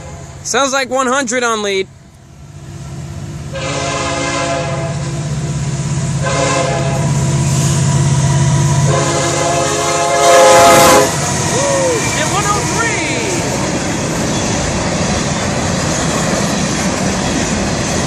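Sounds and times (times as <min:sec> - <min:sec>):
rush of passing train: 0:00.0 - 0:18.0
locomotive engine throbbing: 0:02.0 - 0:18.0
train air horn blasts: 0:03.5 - 0:05.1, 0:06.2 - 0:07.8, 0:08.6 - 0:12.8.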